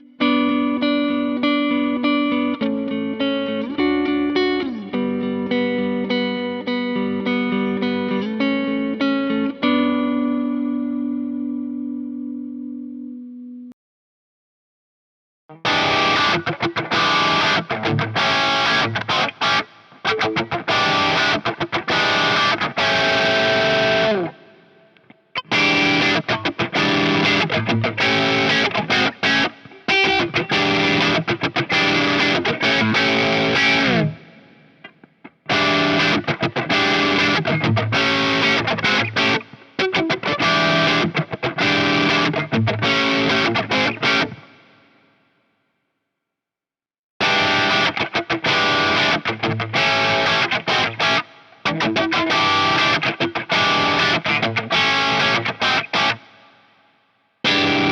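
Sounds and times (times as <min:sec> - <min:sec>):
distorted electric guitar riffs: 0:15.5 - 0:45.0, 0:47.2 - 0:57.9.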